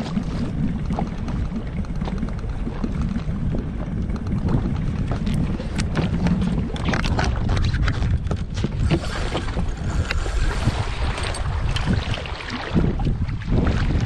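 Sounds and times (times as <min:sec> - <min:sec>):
low steady rumble: 0:00.0 - 0:14.0
wind buffeting microphone: 0:00.0 - 0:14.0
knocks and clicks: 0:00.7 - 0:09.5.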